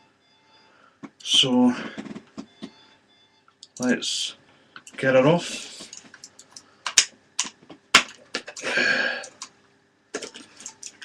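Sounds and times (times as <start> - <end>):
plastic packaging clicks and snaps: 5.9 - 8.6.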